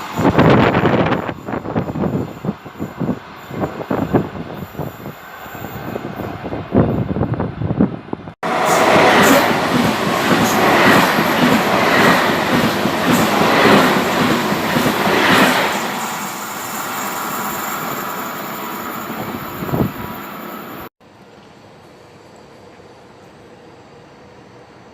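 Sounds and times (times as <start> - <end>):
train wheels rushing: 0.0 - 20.9.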